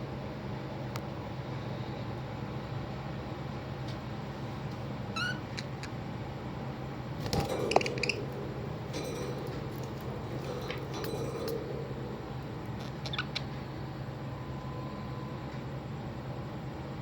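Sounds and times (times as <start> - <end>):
steady low hum: 0.0 - 17.0
birds chirping: 7.3 - 15.0.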